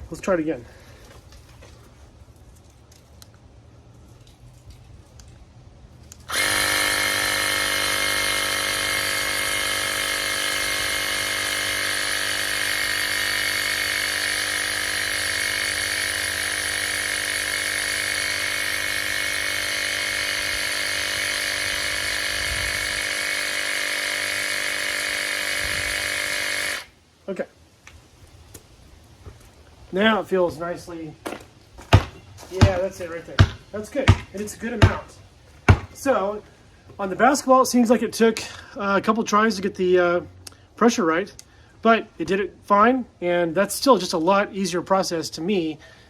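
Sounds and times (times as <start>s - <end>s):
electric compressor buzzing hum: 6.2s - 27.0s, 29.2s - 36.6s.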